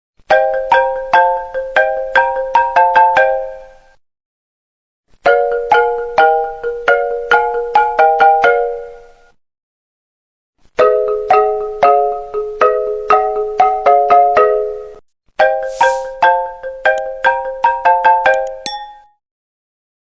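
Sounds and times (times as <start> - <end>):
marimba ringtone: 18.6 - 19.1.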